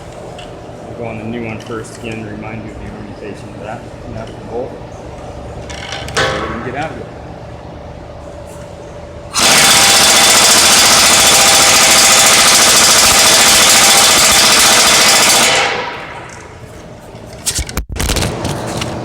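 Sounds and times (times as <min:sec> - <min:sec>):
pneumatic impact wrench hammering: 0:09.3 - 0:16.4.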